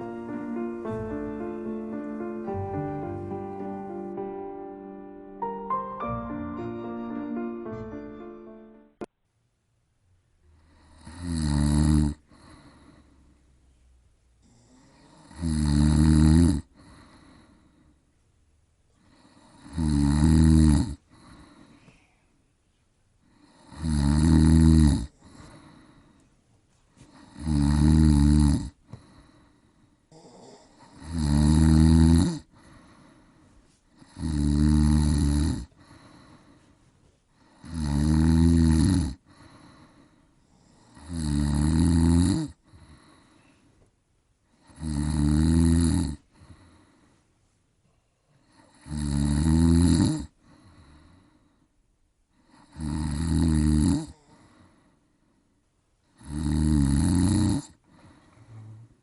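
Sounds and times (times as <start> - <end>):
quiet breathing: 10.4 - 20.0, 20.8 - 41.6, 42.4 - 49.0, 50.2 - 52.9, 53.9 - 56.4, 57.4 - 59.0
person snoring heavily: 10.7 - 13.0, 14.4 - 17.6, 19.1 - 21.6, 23.3 - 26.0, 27.1 - 29.5, 30.1 - 33.1, 34.0 - 36.5, 37.4 - 43.3, 44.6 - 46.7, 48.4 - 51.2, 52.4 - 54.7, 56.2 - 59.0.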